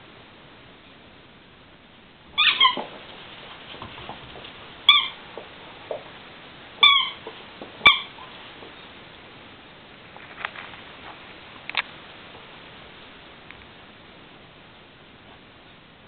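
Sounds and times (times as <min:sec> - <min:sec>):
squeaky toy squeaking: 0:02.4 - 0:02.9, 0:04.9 - 0:05.2, 0:06.8 - 0:07.2, 0:07.8 - 0:08.2
soft fumbling sounds: 0:02.4 - 0:09.1, 0:10.0 - 0:12.6.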